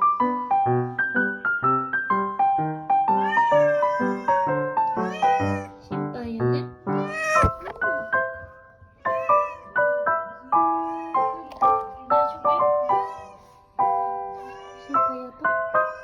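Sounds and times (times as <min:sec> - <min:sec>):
cat meowing: 0:03.2 - 0:05.9, 0:07.0 - 0:08.0, 0:09.0 - 0:16.0.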